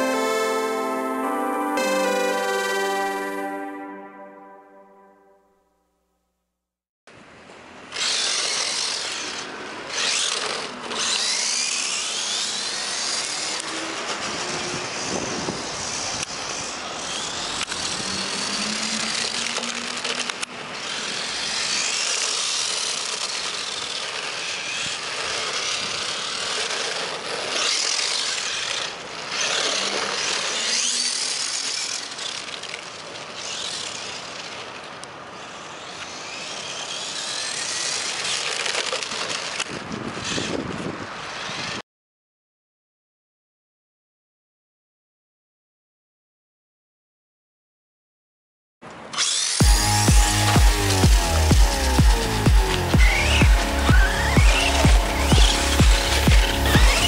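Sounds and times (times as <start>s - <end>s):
drivetrain and tyre rushing: 8.0s - 30.9s
electric motor whining: 8.0s - 39.7s, 49.2s - 57.0s.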